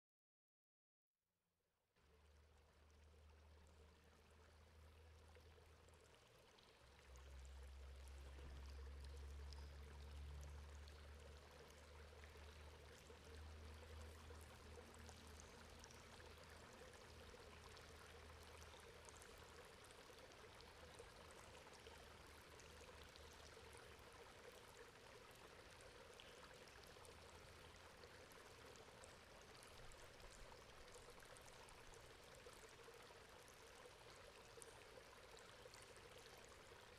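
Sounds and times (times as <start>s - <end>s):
water trickling through metal grate: 2.1s - 36.9s.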